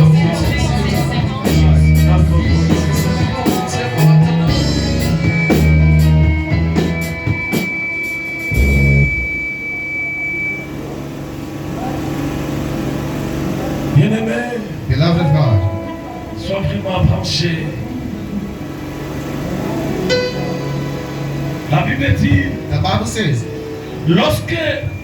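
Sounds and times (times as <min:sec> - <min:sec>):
drum kit and bass beat: 0:00.0 - 0:09.5
worship band music: 0:00.0 - 0:12.3
held chord: 0:08.2 - 0:09.9, 0:18.6 - 0:24.2.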